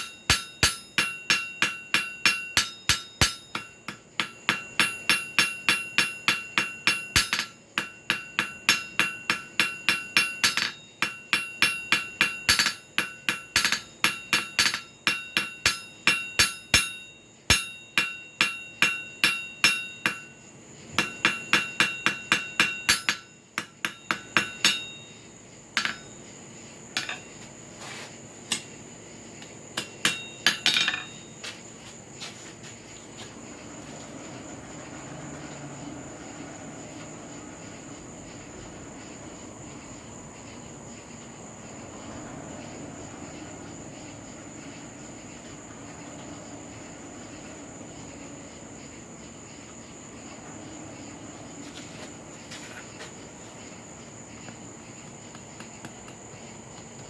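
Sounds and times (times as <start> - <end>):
hammer striking nail on anvil: 0.0 - 20.4, 21.0 - 25.2, 25.8 - 26.2, 27.0 - 27.3, 29.8 - 31.3.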